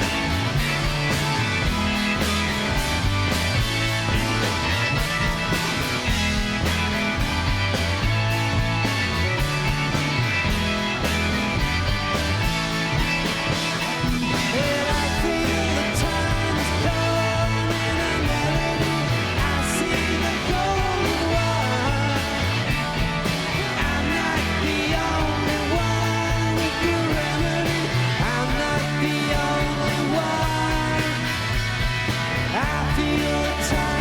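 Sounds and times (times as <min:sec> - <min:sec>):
repeating bass line: 0:00.0 - 0:34.0
rock band playing: 0:00.0 - 0:34.0
person singing: 0:14.5 - 0:22.6, 0:23.5 - 0:31.4, 0:32.5 - 0:34.0.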